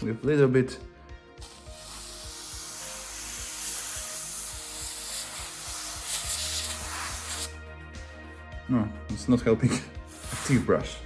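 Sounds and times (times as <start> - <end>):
background music: 0.0 - 11.0.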